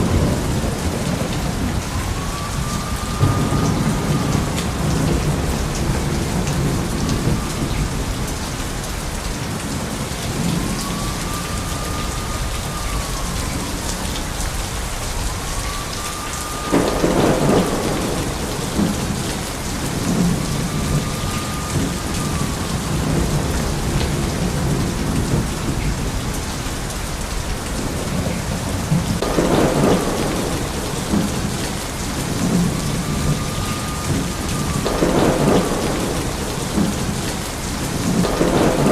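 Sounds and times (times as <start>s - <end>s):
sharp thunderclaps: 0.0s - 8.4s, 16.5s - 26.2s, 28.7s - 38.9s
heavy rain: 0.0s - 38.9s
low rumble of thunder: 0.0s - 38.9s
faint whistling tone: 0.3s - 8.7s, 10.3s - 25.0s, 29.2s - 37.4s.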